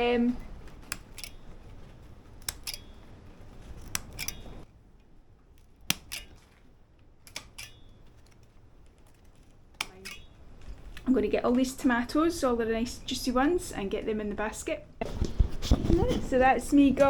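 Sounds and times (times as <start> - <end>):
garden scissors snipping stems: 0.2 - 4.7, 5.5 - 11.6.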